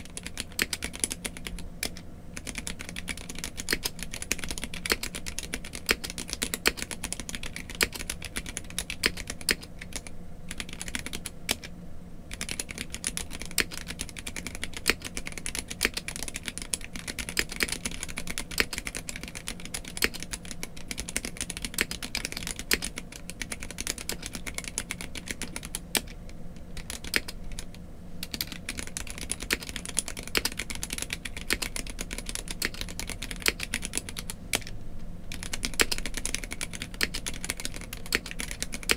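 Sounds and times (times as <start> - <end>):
mechanical keyboard typing: 0.0 - 11.7, 12.3 - 38.9.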